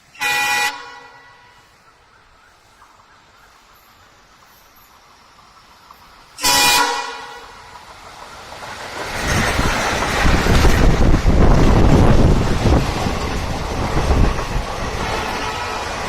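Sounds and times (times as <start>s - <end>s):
diesel locomotive rumble: 0.0s - 16.0s
locomotive horn blast: 0.1s - 1.7s, 6.4s - 7.6s, 15.0s - 16.0s.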